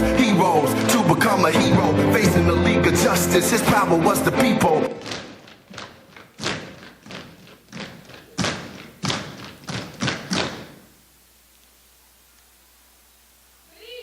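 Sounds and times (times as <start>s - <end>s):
percussive stomps and hand hits: 4.9s - 10.9s.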